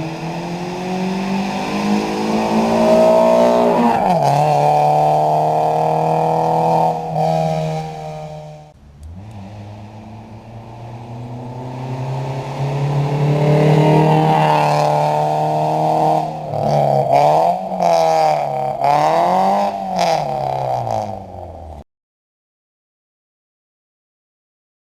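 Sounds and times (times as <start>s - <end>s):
loud raw engine revving: 0.0s - 21.8s.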